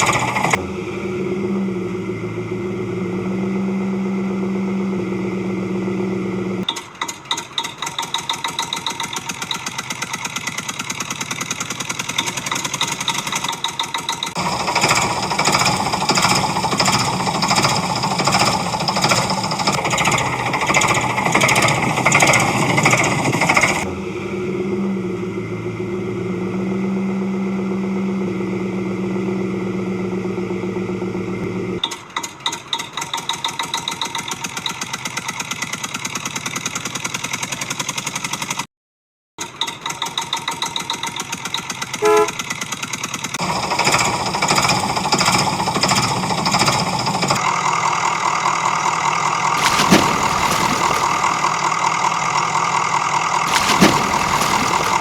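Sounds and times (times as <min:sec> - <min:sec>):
engine chugging idle: 0:06.9 - 0:23.8.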